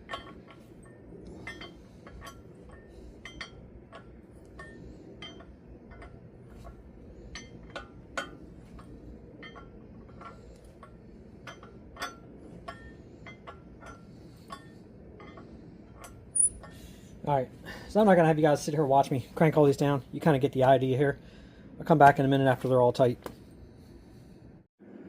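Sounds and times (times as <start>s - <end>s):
faint metallic clink: 0.0s - 16.9s.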